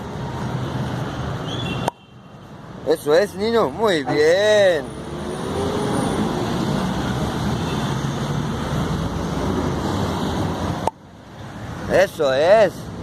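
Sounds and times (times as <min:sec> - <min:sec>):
road traffic: 0:00.0 - 0:13.0.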